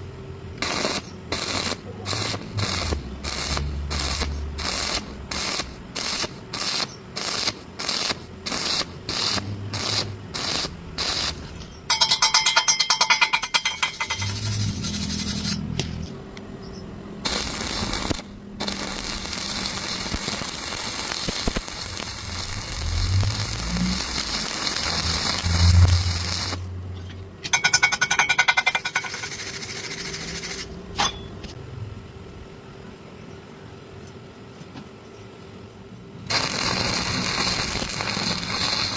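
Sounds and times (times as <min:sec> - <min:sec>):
welding arc crackling: 0:00.6 - 0:12.5, 0:13.2 - 0:16.0, 0:17.2 - 0:26.8, 0:28.5 - 0:30.7, 0:36.3 - 0:38.9.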